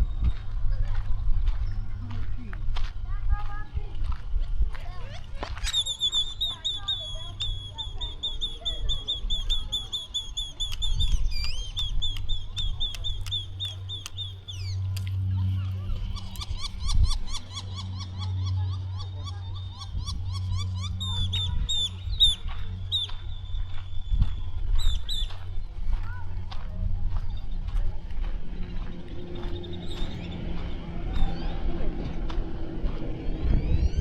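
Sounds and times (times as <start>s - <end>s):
steady low hum: 0.0s - 34.0s
birds chirping rapidly: 5.0s - 26.3s, 27.1s - 34.0s
lower bird call: 5.6s - 25.6s.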